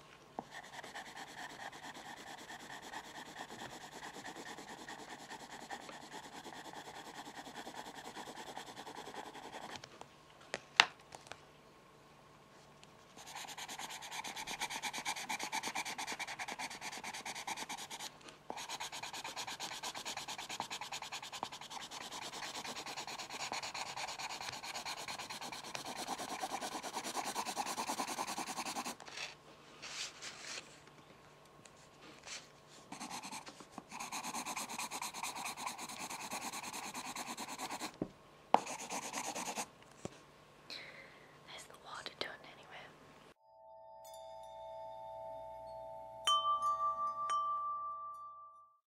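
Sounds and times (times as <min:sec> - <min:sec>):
pencil scratching on paper: 0:00.4 - 0:09.8, 0:13.2 - 0:29.0, 0:32.9 - 0:38.0, 0:38.6 - 0:39.7.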